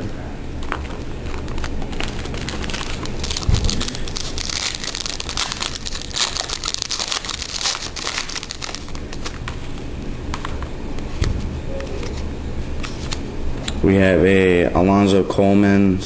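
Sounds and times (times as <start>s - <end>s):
glossy cards being handled: 0.5s - 13.8s
foil wrapper crinkling: 0.6s - 9.7s.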